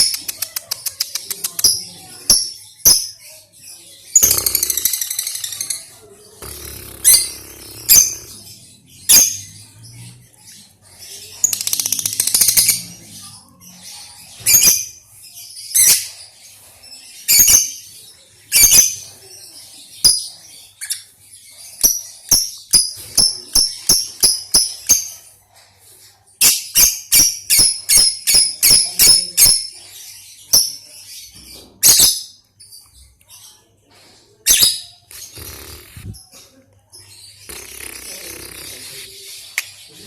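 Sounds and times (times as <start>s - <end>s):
lovebird chirping: 0.0s - 19.1s, 34.5s - 40.0s.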